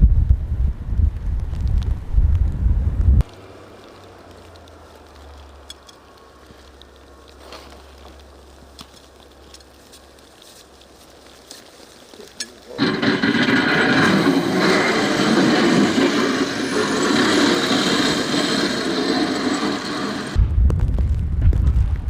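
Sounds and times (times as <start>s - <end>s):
wind rumbling on microphone: 0.0s - 7.4s, 13.2s - 22.0s
loud engine-driven machine: 12.8s - 20.4s.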